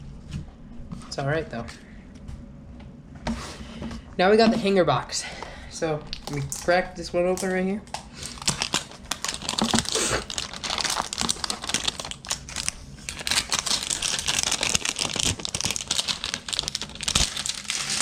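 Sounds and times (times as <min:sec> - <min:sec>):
packaging crinkling and tearing: 0:07.4 - 0:18.0.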